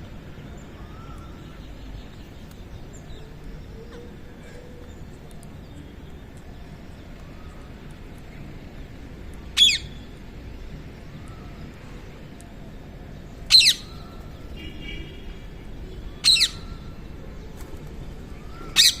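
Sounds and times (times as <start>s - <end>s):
parakeets high calls: 9.6s - 10.0s, 13.5s - 14.1s, 16.2s - 16.8s, 18.6s - 19.0s.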